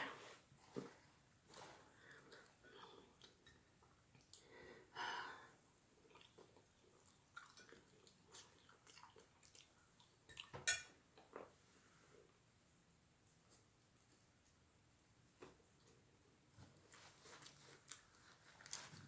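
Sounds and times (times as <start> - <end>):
person chewing with wet mouth noises: 6.0 - 10.5, 17.2 - 19.0.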